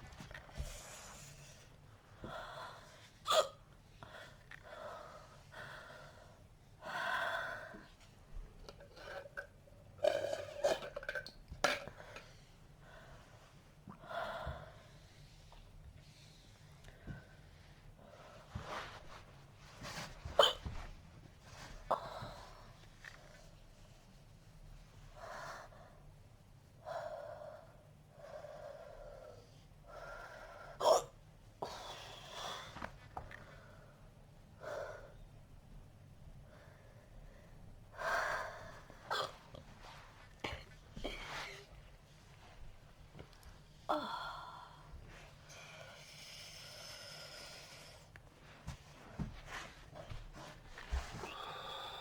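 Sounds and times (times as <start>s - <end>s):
person breathing: 49.5s - 52.0s.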